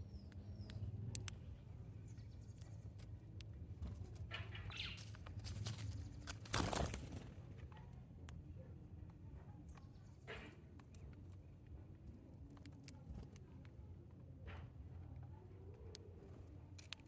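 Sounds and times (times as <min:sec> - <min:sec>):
sharp bird clicks: 0:00.0 - 0:01.5
wings flapping: 0:05.0 - 0:07.5.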